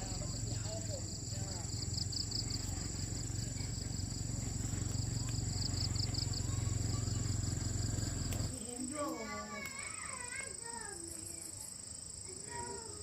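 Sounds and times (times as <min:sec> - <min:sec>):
steady low rumble: 0:00.0 - 0:08.6
insects chirping: 0:00.0 - 0:13.0.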